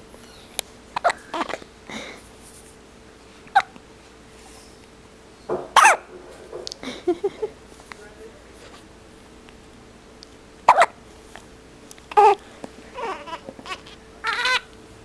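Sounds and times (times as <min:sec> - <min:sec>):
person hiccuping: 0:03.5 - 0:03.8, 0:10.7 - 0:11.0.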